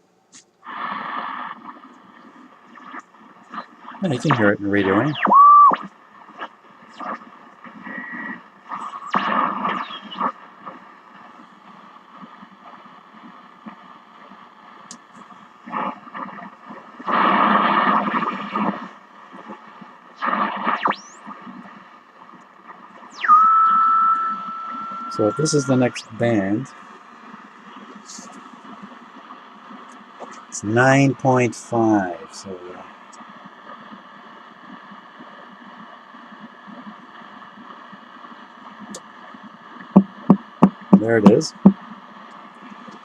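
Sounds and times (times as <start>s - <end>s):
faint crackles: 0.0s - 43.0s
radio static bursts: 0.4s - 43.0s
radio whistle sweeping in pitch: 4.2s - 5.9s, 7.9s - 10.3s, 20.2s - 21.3s, 23.1s - 26.6s.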